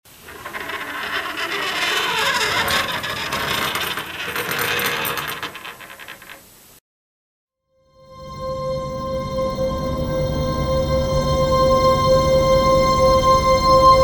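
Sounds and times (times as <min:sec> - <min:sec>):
dense rattling and scraping: 0:00.1 - 0:06.4.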